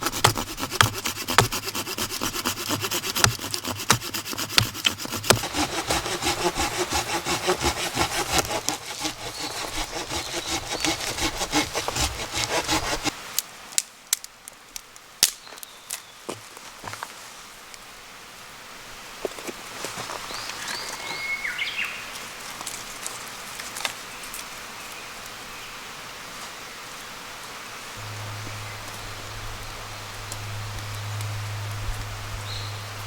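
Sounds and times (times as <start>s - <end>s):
hand saw cutting wood: 0.0s - 13.1s.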